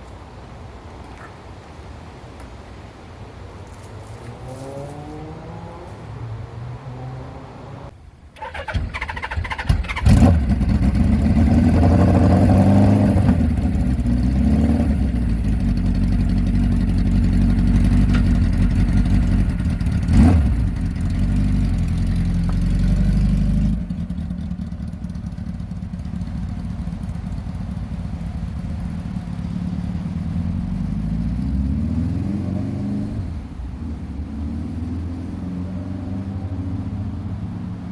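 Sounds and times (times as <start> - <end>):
motorcycle engine starting and running: 8.4 - 35.4.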